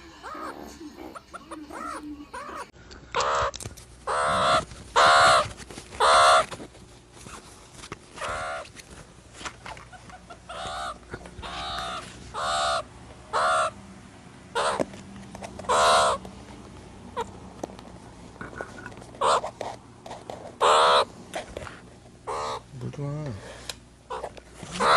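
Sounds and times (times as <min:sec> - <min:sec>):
meerkat calling: 0:00.0 - 0:06.6, 0:08.2 - 0:08.7, 0:09.9 - 0:13.8, 0:14.5 - 0:14.9, 0:15.6 - 0:16.2, 0:19.2 - 0:19.5, 0:20.6 - 0:21.1, 0:22.2 - 0:22.7, 0:24.1 - 0:24.9.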